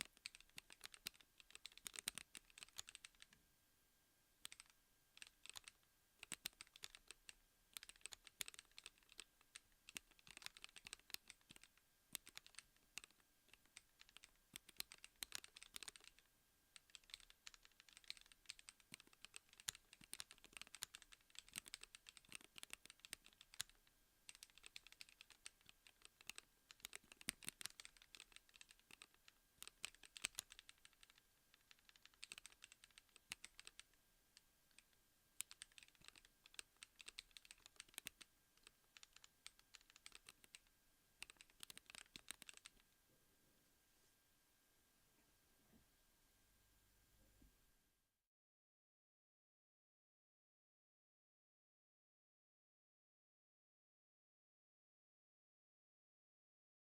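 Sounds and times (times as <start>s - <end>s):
keyboard key clicks: 4.4s - 16.2s, 16.8s - 33.8s, 35.4s - 42.8s.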